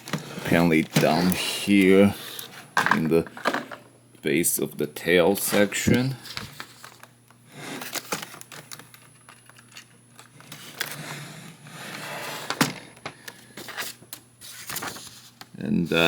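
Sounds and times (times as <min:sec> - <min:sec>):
paper and cardboard rustling: 0:05.4 - 0:16.0.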